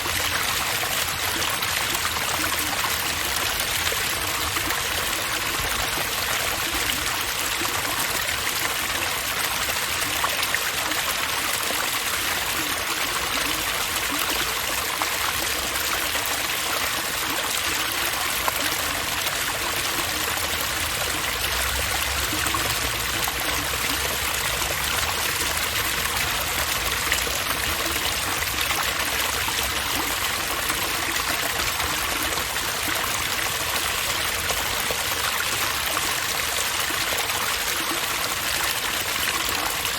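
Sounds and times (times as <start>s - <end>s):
water splashing in fountain: 0.0s - 39.9s.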